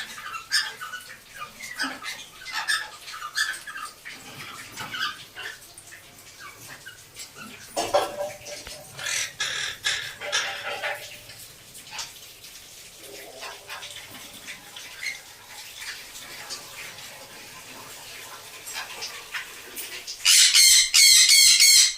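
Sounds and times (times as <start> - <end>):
cockatiels chirping and squawking: 20.2 - 21.9.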